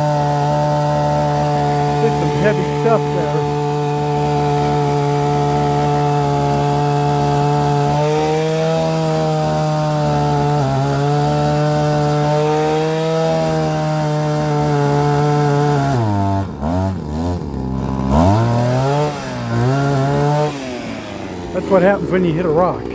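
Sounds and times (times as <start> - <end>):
earth auger engine running: 0.0 - 22.9.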